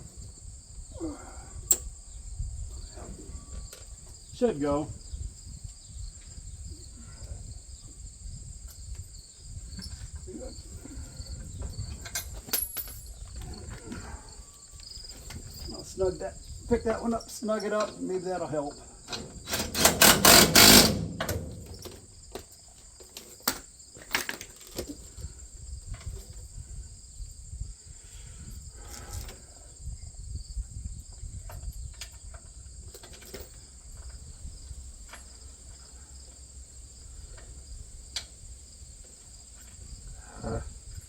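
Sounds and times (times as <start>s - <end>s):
crickets chirping: 0.0s - 41.0s
hand tools knocking on metal: 19.1s - 22.0s.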